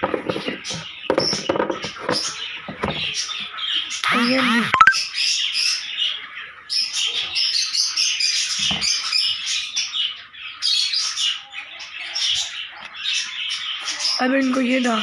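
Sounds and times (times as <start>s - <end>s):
chicks peeping: 0.0s - 15.0s.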